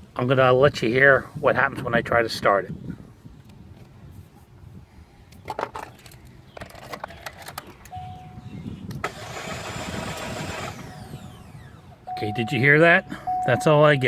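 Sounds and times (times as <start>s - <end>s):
starter cranking car engine: 9.0s - 11.9s.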